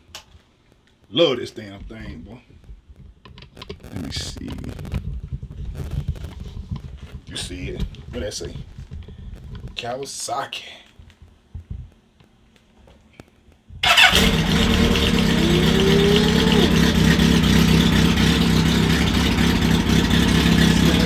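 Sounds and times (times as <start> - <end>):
engine starting and idling: 13.8 - 21.0.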